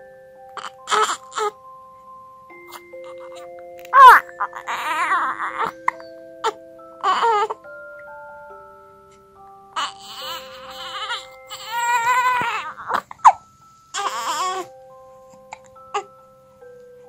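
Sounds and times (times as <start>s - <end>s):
chiming mallet music: 0.0s - 17.0s
newborn baby crying: 0.6s - 1.6s, 2.6s - 5.8s, 6.4s - 7.7s, 9.7s - 14.7s, 15.5s - 16.2s.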